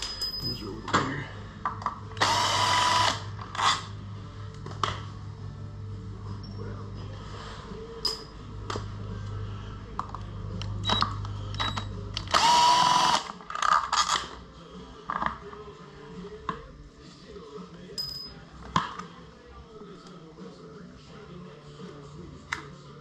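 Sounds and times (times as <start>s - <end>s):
metal parts and tools clicking: 0.0s - 1.0s, 8.0s - 8.3s
power drill whining: 2.2s - 3.9s, 12.3s - 13.8s.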